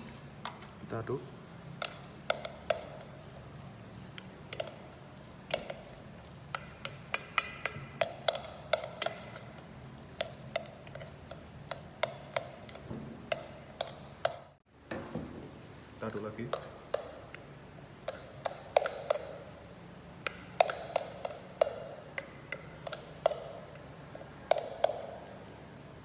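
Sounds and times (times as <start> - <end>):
spoon stirring thick mixture: 0.0 - 14.6, 15.4 - 25.8
spoon tapping against bowl: 1.8 - 3.1, 4.1 - 14.5, 16.1 - 19.6, 20.2 - 25.4.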